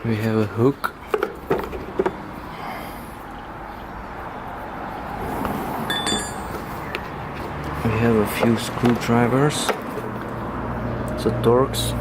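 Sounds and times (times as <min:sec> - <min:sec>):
vehicle passing: 0:01.4 - 0:12.0
high metallic ring: 0:05.9 - 0:06.6.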